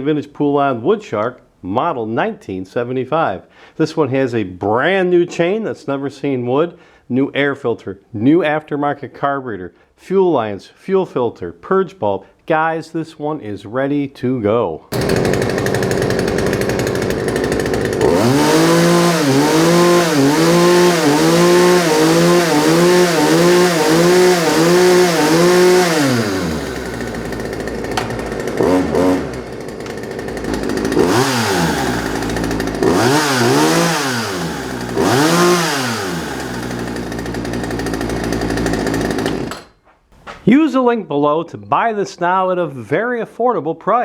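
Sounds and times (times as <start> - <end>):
chainsaw idling and revving: 14.9 - 39.8.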